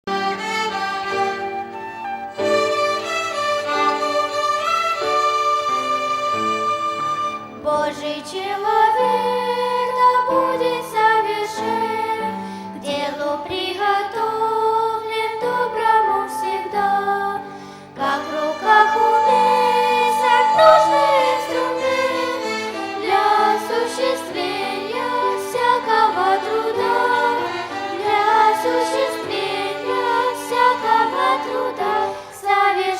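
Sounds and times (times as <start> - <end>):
violin ensemble playing: 0.1 - 7.5, 18.0 - 32.7
singers singing a hymn: 7.7 - 32.9.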